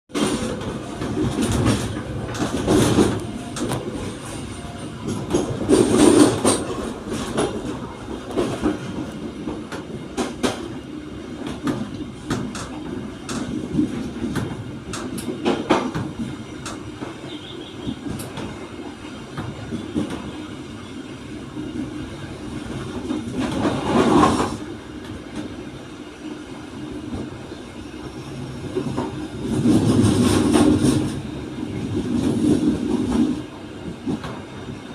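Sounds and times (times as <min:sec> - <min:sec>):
wheels clacking over rail joints: 0:00.1 - 0:10.8
train carriage rumble: 0:00.1 - 0:34.9.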